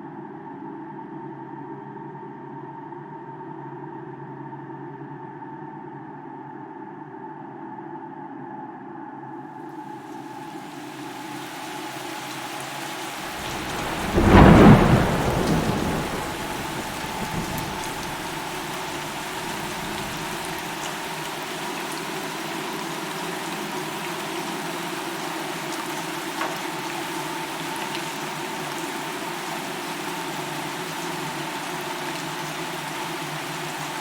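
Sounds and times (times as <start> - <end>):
steady rain falling: 10.0 - 34.0
thunder clap and rumble: 13.2 - 20.7.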